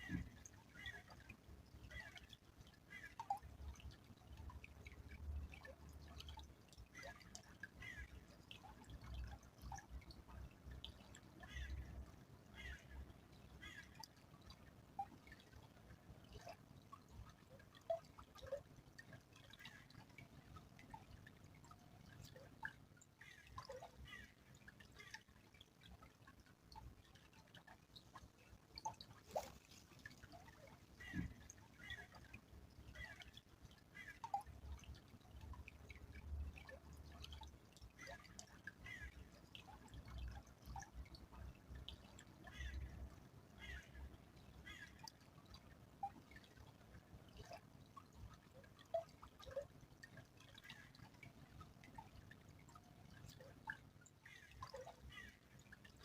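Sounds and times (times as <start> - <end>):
faint trickling stream: 0.0 - 56.0.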